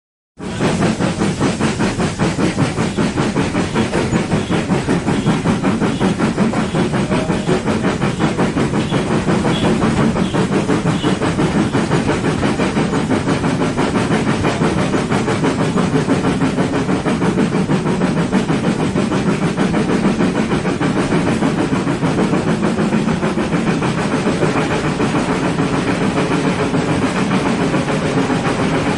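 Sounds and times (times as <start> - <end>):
steam engine chuffing: 0.4 - 28.9
steam hissing: 0.4 - 28.9.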